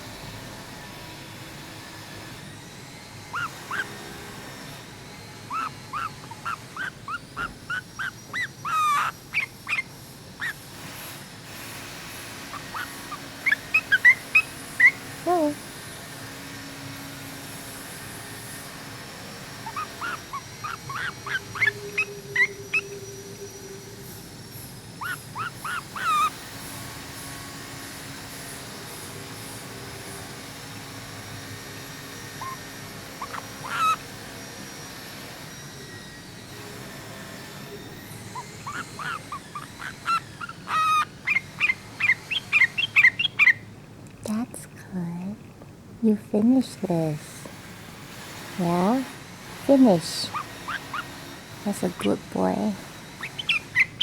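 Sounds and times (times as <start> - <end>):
bird chirping: 3.3 - 4.1, 5.5 - 11.1, 11.8 - 15.7, 19.5 - 27.2, 31.9 - 34.2, 37.4 - 44.3, 49.7 - 54.0.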